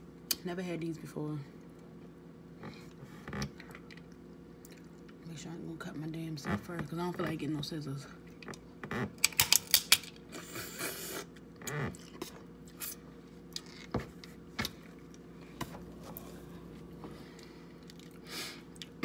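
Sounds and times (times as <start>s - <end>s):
crab shells cracking: 9.2s - 10.2s.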